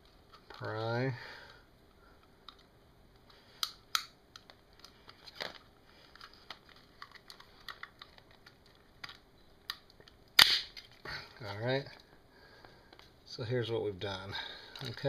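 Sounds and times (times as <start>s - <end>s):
plastic clicks and creaks: 2.2s - 10.2s, 14.1s - 15.0s
loud plastic crack: 5.4s - 11.0s.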